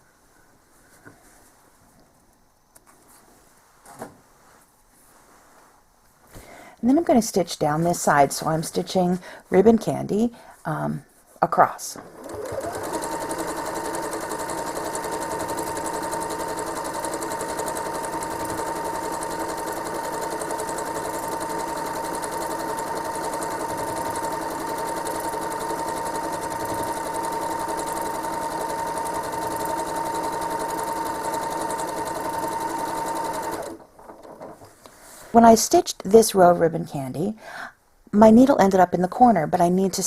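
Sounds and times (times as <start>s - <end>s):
sewing machine stitching: 12.0s - 34.6s.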